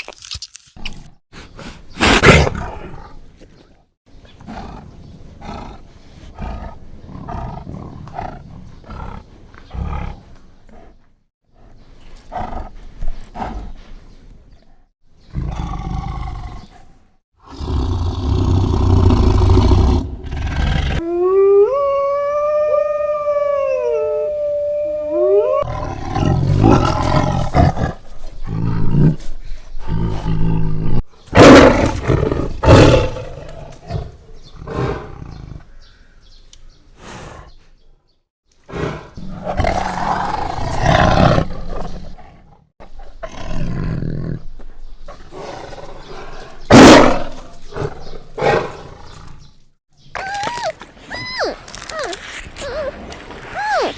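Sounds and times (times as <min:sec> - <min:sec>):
big cats roaring: 0:17.4 - 0:21.1, 0:38.7 - 0:42.5.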